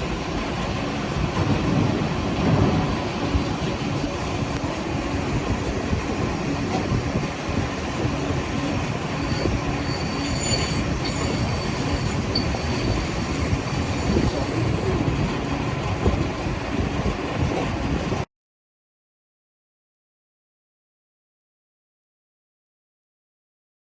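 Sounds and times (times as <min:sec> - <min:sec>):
lathe cutting metal: 0:04.7 - 0:15.4
faint high squeals: 0:09.0 - 0:15.0.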